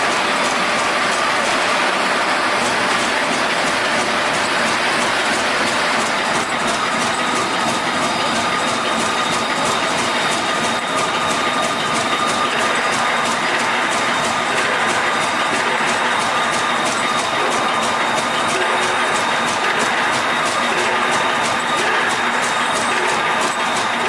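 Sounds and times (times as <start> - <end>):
workshop machinery running: 0.0 - 24.0.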